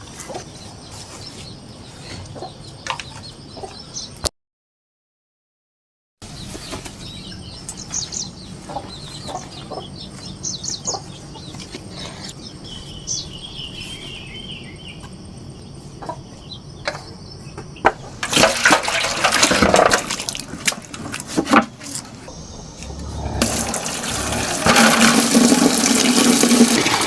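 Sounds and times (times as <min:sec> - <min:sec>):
chickens clucking: 0:00.1 - 0:04.1, 0:07.4 - 0:12.5, 0:15.9 - 0:17.1, 0:22.2 - 0:26.5
high chirping calls: 0:22.3 - 0:23.9
loud rough noise: 0:22.3 - 0:27.0.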